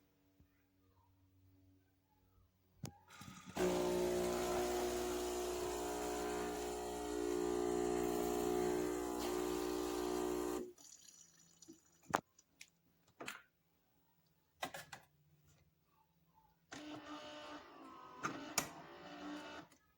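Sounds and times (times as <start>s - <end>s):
espresso machine pump running: 3.1s - 10.7s
liquid flowing: 3.4s - 12.4s.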